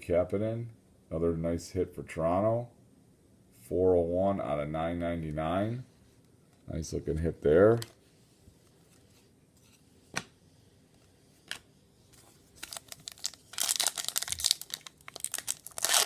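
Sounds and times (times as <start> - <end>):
card pack wrapper tearing: 12.6 - 16.0.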